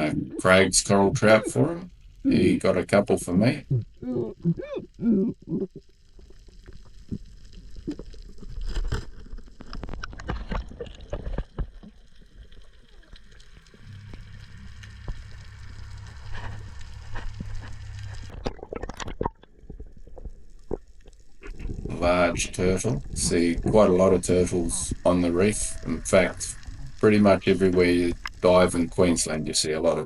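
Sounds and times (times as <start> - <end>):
low steady hum: 0.0 - 30.0
underwater gurgling and sloshing: 0.0 - 30.0
clicks underwater: 5.4 - 13.3, 16.4 - 24.1.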